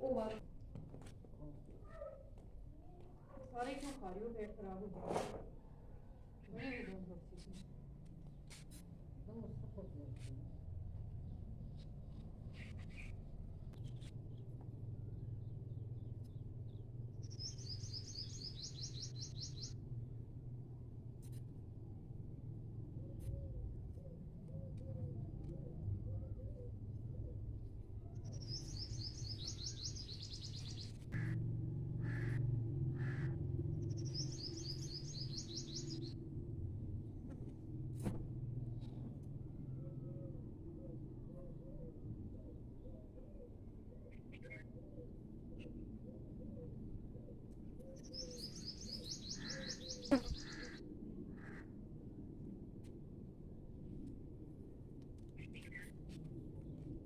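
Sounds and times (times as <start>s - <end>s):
low hum: 7.2s - 49.3s
small bird singing: 15.4s - 19.8s, 28.0s - 31.1s, 33.8s - 36.2s, 47.8s - 50.8s.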